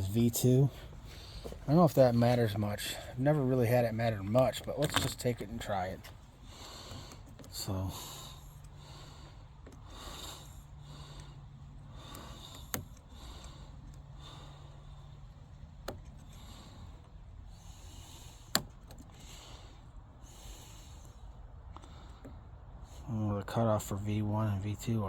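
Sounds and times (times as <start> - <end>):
soft breathing: 0.5 - 3.5, 5.5 - 23.2
quiet metal clicks: 3.9 - 22.8.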